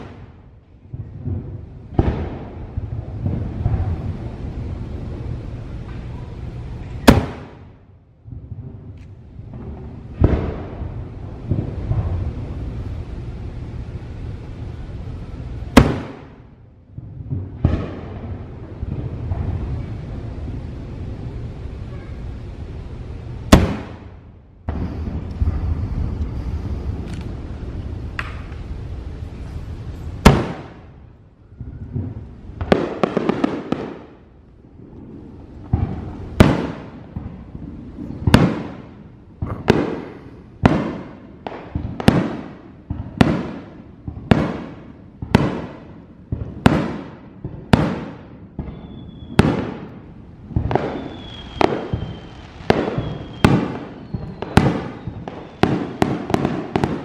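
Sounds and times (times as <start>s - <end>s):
fireworks bangs: 0.0s - 57.0s
faint whistling tone: 24.8s - 27.0s, 48.7s - 49.4s, 50.9s - 55.6s.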